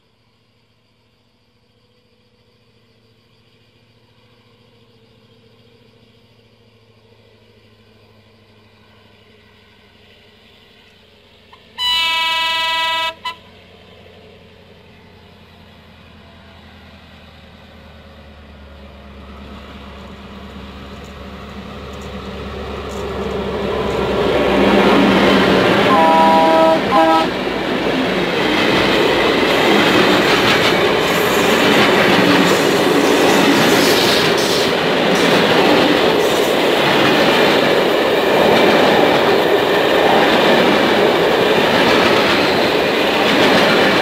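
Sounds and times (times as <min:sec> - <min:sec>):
locomotive engine and rail noise: 0:00.0 - 0:44.0
train horn: 0:11.5 - 0:13.6, 0:24.5 - 0:27.6.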